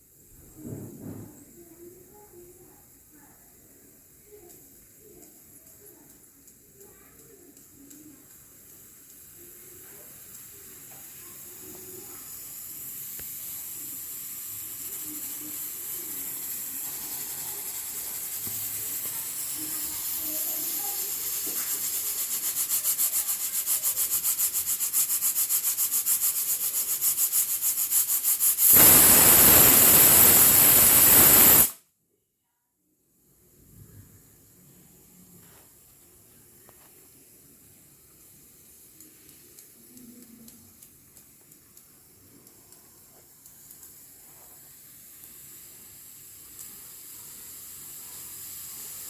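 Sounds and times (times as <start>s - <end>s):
pressure cooker hissing: 7.9s - 31.8s, 41.1s - 49.0s
pressure cooker whistle blast: 28.6s - 31.8s.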